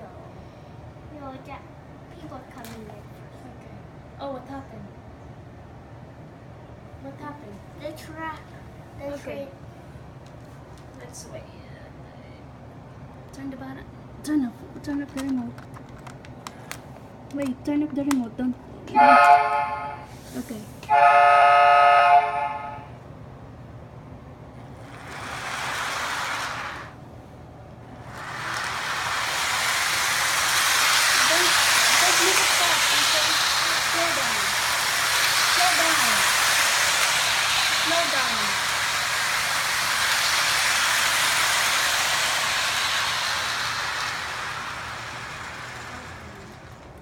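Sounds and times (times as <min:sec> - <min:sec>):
model train humming: 0:18.9 - 0:23.0, 0:24.6 - 0:27.1, 0:27.7 - 0:47.0
hissing noise: 0:28.1 - 0:46.7.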